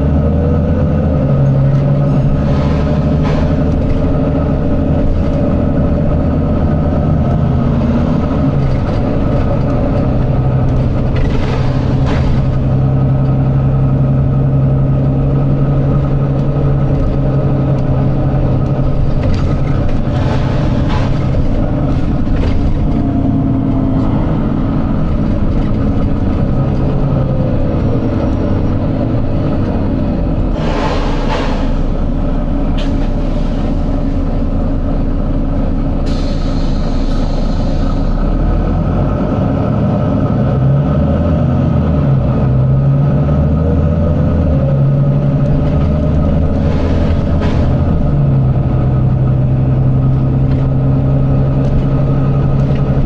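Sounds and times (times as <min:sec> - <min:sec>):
bus diesel engine running: 0:00.0 - 0:53.0
compressed air hiss: 0:30.5 - 0:32.1, 0:36.0 - 0:38.2.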